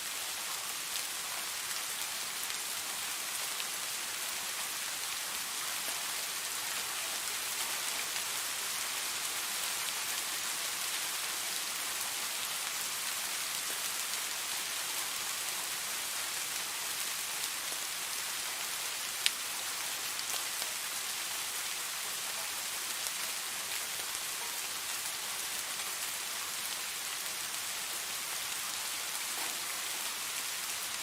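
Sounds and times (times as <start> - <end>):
steady rain hiss: 0.0 - 31.0.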